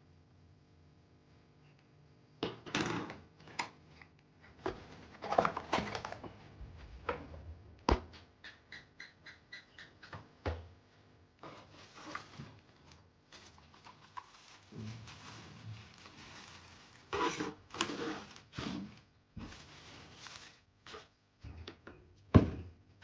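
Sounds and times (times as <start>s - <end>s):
packaging rustling: 11.7s - 20.6s.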